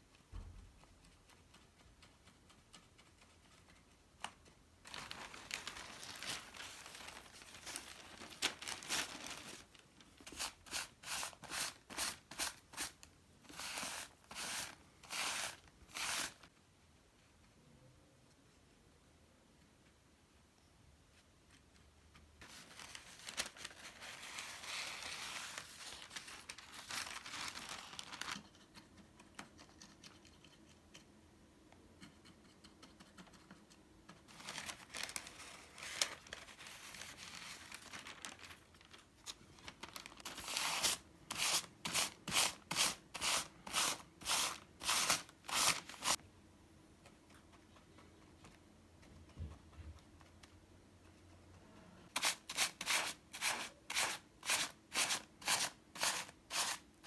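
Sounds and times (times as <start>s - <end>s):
paper rustling and rubbing: 4.8s - 16.5s, 22.4s - 28.9s, 34.2s - 46.2s.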